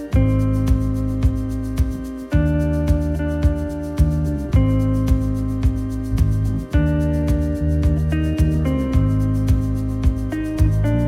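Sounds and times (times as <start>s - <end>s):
instrumental chords: 0.0s - 11.0s
steady beat: 0.0s - 11.0s.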